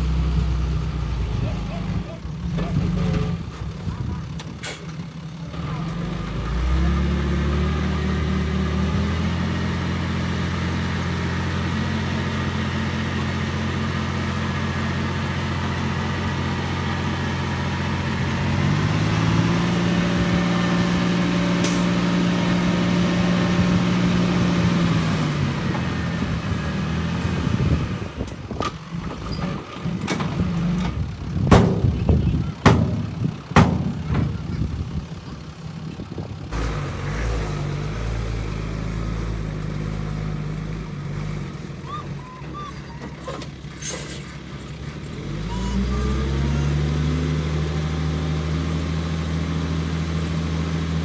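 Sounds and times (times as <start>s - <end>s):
bulldozer diesel engine revving: 0.0s - 51.0s
sharp knocks: 31.5s - 34.4s.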